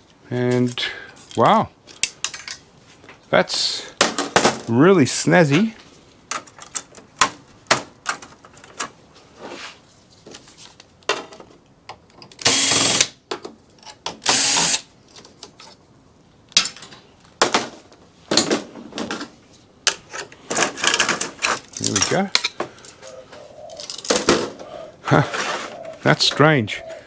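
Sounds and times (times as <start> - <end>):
metal parts clicking and knocking: 1.3 - 2.6, 19.9 - 22.9, 23.7 - 24.4
cordless power screwdriver running: 12.4 - 13.0, 14.3 - 14.8.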